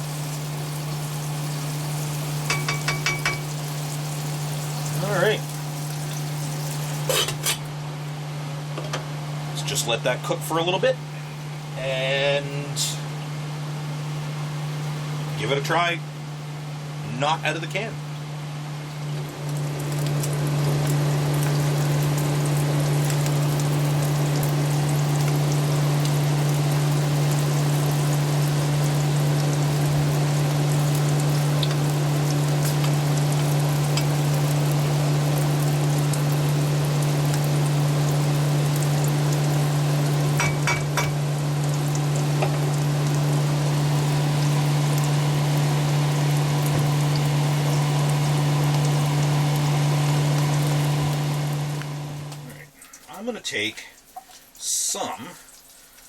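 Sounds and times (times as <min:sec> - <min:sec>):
frying sizzle with crackles: 0:00.0 - 0:56.0.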